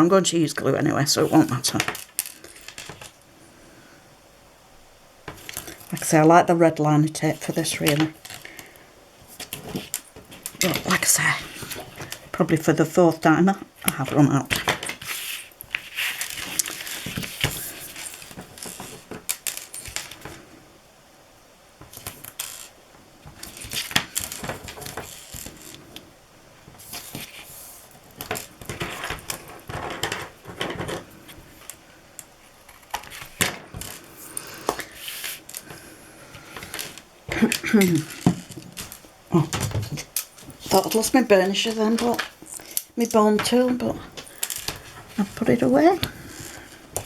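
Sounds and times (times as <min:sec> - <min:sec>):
cardstock and tape rustling: 0:00.9 - 0:03.3, 0:05.2 - 0:20.6, 0:21.8 - 0:47.0
small tools clicking and clattering: 0:36.6 - 0:47.0.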